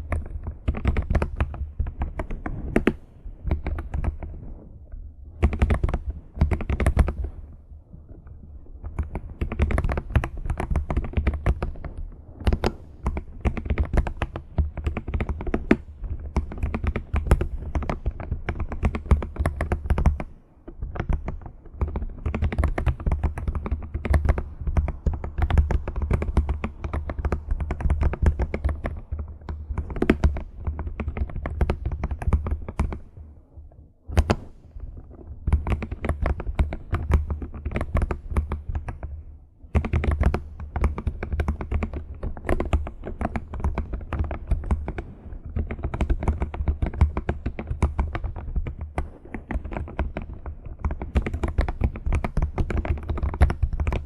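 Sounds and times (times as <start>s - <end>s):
computer keyboard typing: 21.0s - 33.0s.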